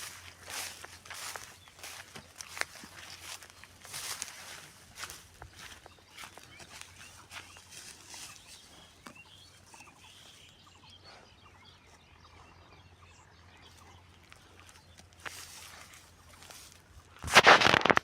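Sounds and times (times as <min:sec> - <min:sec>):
brief rustle: 0:17.2 - 0:18.0.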